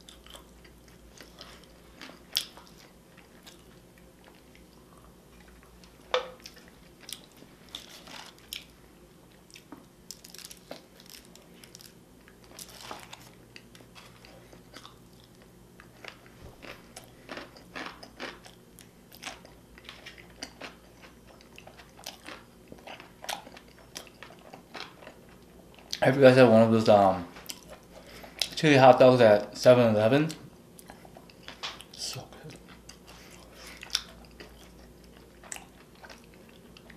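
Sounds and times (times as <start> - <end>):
person chewing food: 0.0 - 26.0, 27.4 - 28.6, 30.8 - 36.9.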